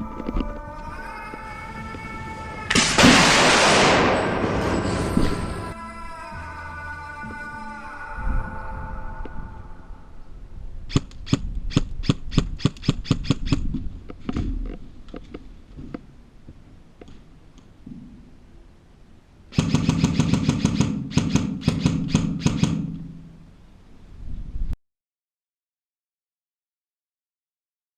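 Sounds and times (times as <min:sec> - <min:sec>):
low hum: 0:00.0 - 0:11.7, 0:21.9 - 0:24.8
airsoft gun automatic bursts: 0:10.9 - 0:13.7, 0:19.5 - 0:23.0
airsoft gun single shots: 0:19.6 - 0:23.0.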